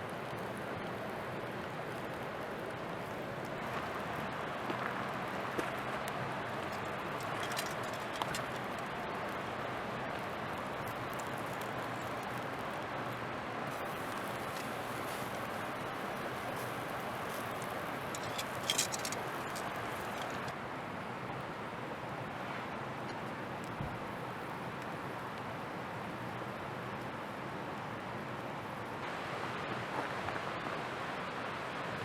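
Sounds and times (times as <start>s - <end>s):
campfire crackles: 0.0s - 29.0s
steak sizzling: 10.7s - 12.7s, 13.7s - 20.5s.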